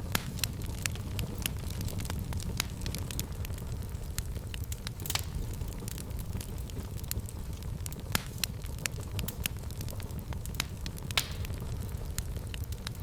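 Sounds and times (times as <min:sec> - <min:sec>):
fire crackling and popping: 0:00.0 - 0:13.0
low rumble of flame: 0:00.0 - 0:13.0.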